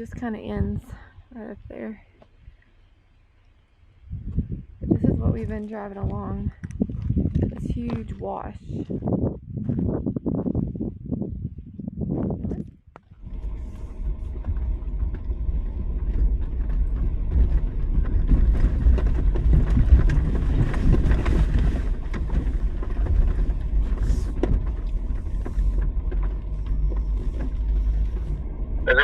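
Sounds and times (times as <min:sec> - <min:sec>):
off-road vehicle engine rumble: 0:00.0 - 0:29.0
small knocks and rattles: 0:13.3 - 0:28.5.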